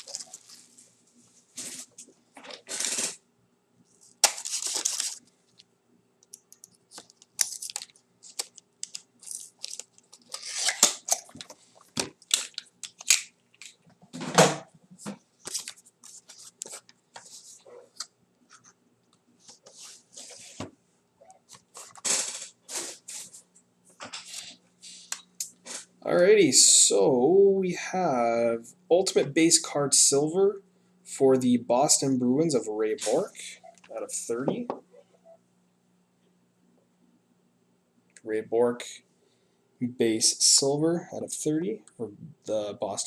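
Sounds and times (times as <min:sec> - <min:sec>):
packaging tearing and crinkling: 0:02.6 - 0:03.2, 0:04.1 - 0:05.3, 0:06.9 - 0:11.5, 0:12.2 - 0:13.8.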